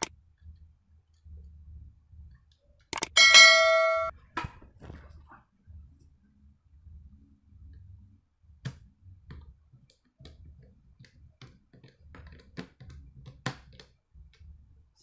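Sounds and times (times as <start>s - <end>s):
clicks and taps of laptop parts: 3.0s - 3.4s, 8.7s - 14.0s.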